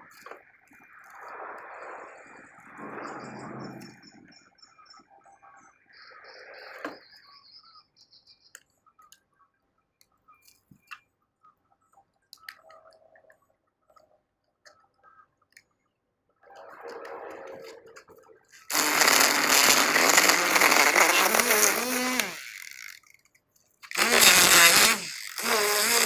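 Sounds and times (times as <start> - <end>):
bird chirping: 2.3 - 18.6.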